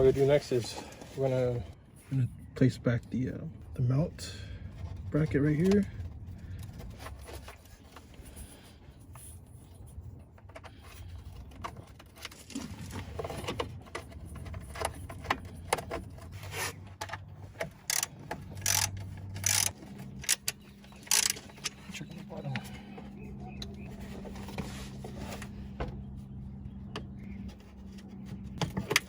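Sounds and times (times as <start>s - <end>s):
metal parts rubbing and scraping: 5.1s - 25.8s
sharp clicks and knocks: 11.4s - 21.9s.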